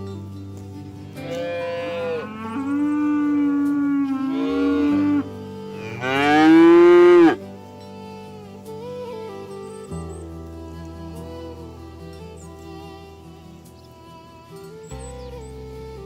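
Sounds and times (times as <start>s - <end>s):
soft background music: 0.0s - 16.0s
cattle mooing: 1.1s - 7.4s.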